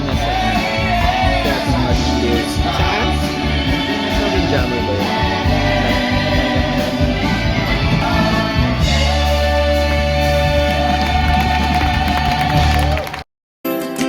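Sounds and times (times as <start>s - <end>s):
person singing: 0.0s - 7.0s
steady low bass: 0.0s - 13.0s.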